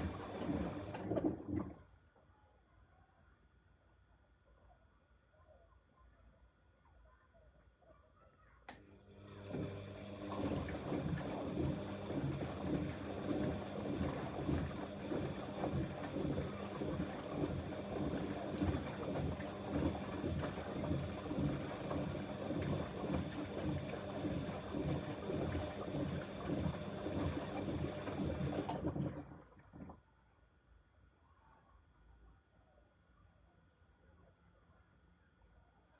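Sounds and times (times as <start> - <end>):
laundry sloshing and tumbling: 0.0 - 1.8, 9.4 - 30.0
washing machine motor hum: 0.0 - 1.8, 8.7 - 30.0.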